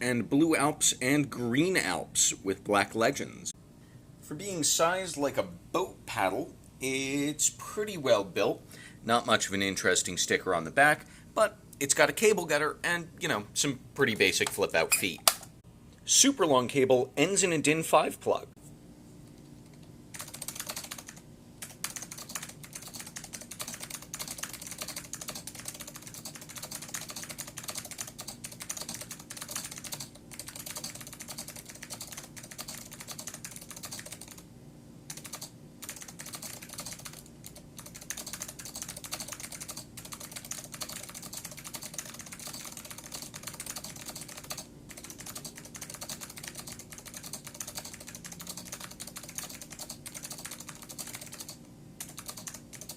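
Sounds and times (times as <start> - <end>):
keyboard typing clicks: 19.8 - 34.4, 35.1 - 52.9.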